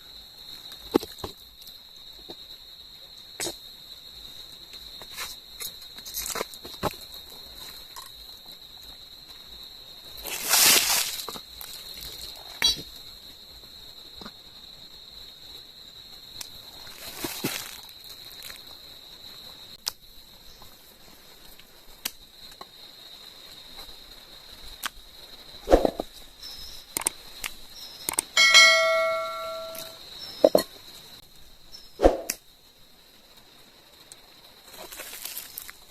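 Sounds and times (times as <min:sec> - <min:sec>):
high insect drone: 0:00.0 - 0:35.9
knocks of camp work: 0:28.1 - 0:30.7
metal object struck ringing: 0:28.4 - 0:30.0.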